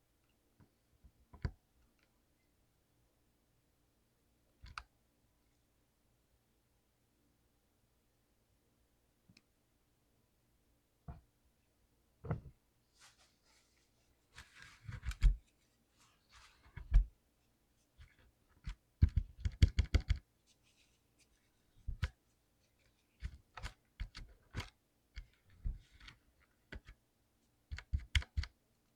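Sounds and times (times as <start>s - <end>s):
soft scratching: 12.9s - 18.3s, 20.4s - 22.0s.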